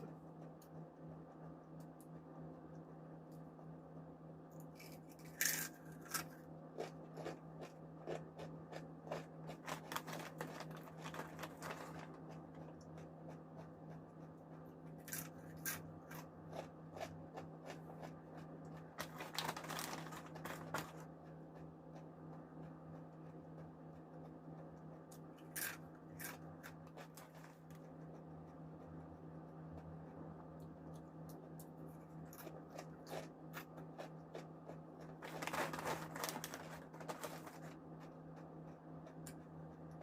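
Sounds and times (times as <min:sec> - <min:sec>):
crunching crisp chips: 0:04.6 - 0:13.7, 0:15.0 - 0:21.1, 0:25.1 - 0:27.8, 0:31.6 - 0:38.1.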